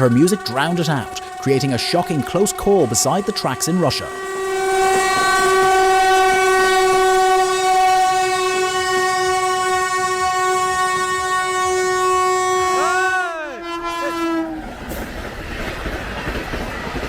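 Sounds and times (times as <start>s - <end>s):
train horn blast: 0.0s - 14.7s
faint train rumble: 0.0s - 17.0s.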